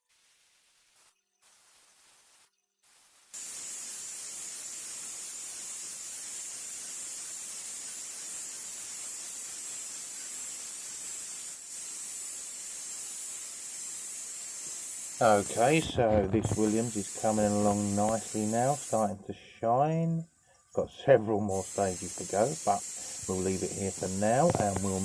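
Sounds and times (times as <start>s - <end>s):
bench sander grinding steel: 21.5s - 25.0s.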